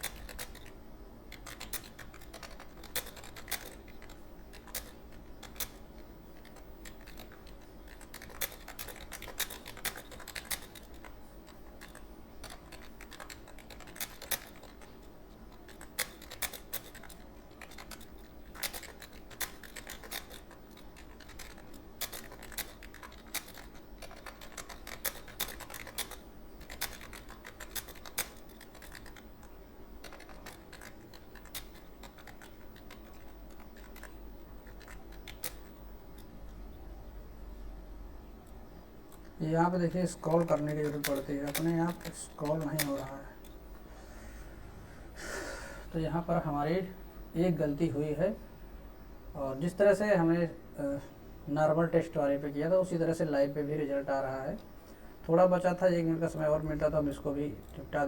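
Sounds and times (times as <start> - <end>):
keyboard typing clicks: 0.0 - 5.8, 6.4 - 36.6, 38.4 - 43.6
steady low hum: 0.0 - 58.0.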